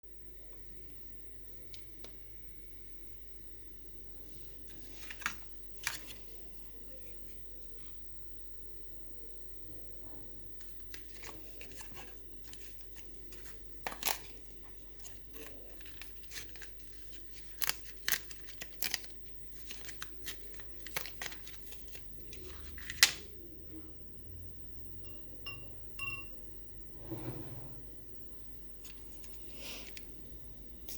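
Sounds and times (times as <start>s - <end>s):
packaging tearing and crinkling: 13.3s - 22.0s.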